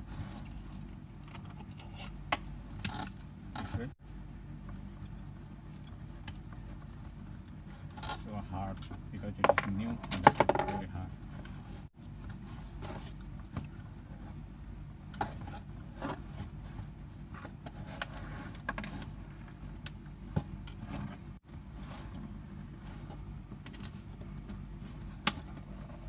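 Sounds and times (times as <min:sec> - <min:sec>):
steady low hum: 0:00.0 - 0:26.0.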